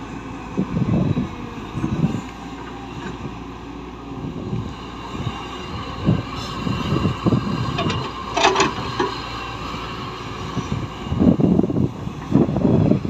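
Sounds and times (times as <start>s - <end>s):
heavy machinery engine rumble: 0.0s - 13.0s.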